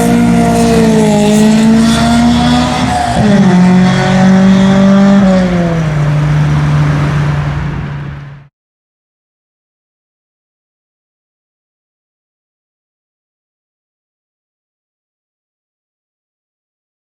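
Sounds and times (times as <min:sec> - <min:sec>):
car engine at high revs: 0:00.0 - 0:08.5.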